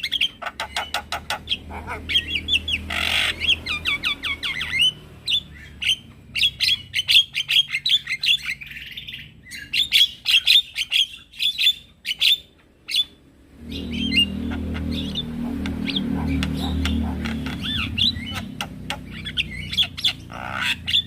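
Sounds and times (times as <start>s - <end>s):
steady low rumble: 13.2s - 21.0s.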